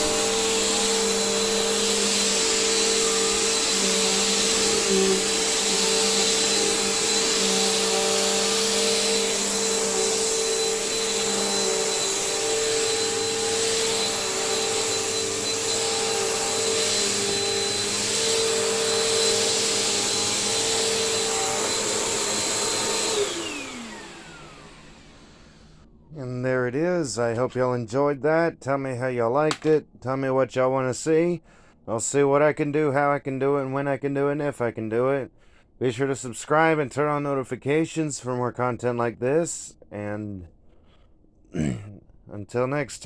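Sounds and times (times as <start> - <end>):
vacuum motor winding down: 0.0 - 25.9
vacuum cleaner running: 0.0 - 26.1.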